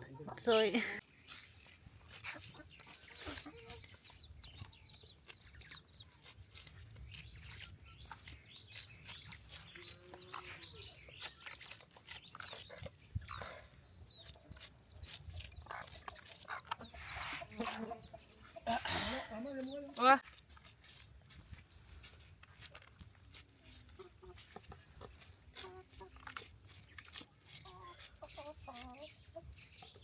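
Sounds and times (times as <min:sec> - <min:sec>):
chickens clucking: 0:00.0 - 0:30.0.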